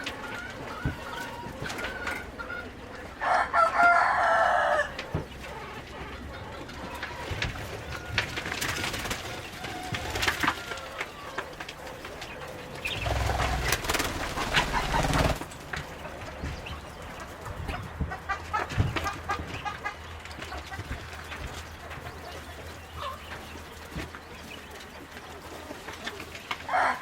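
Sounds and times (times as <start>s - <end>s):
poultry clucking: 0.0s - 27.0s
low rumbling noise: 12.0s - 25.0s.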